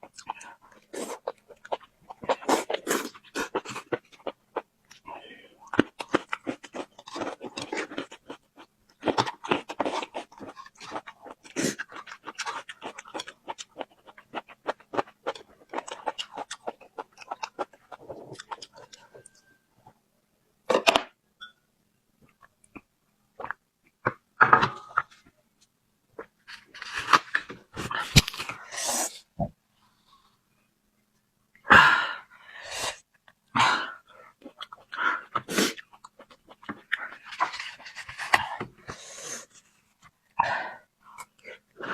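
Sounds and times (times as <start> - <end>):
person chewing crunchy food: 0.0 - 5.0, 5.6 - 19.4, 34.4 - 39.1.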